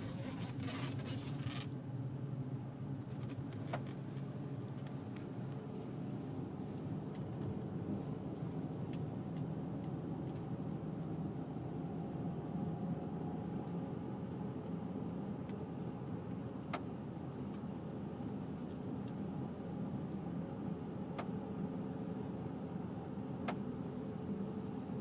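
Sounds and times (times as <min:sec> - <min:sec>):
car road rumble: 0:00.0 - 0:25.0
sharp clicks from car: 0:21.1 - 0:21.4, 0:23.4 - 0:23.7.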